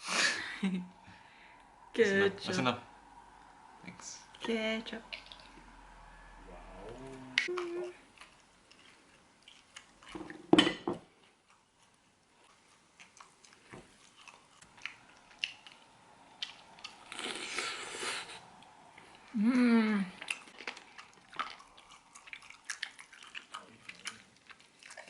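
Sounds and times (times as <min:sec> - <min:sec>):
chewing and crunching: 0:07.5 - 0:10.4, 0:11.1 - 0:17.8, 0:20.1 - 0:25.0.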